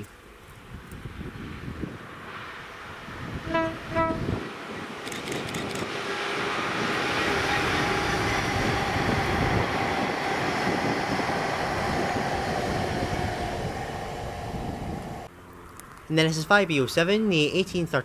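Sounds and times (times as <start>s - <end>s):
freight train rumbling past: 1.1s - 15.4s.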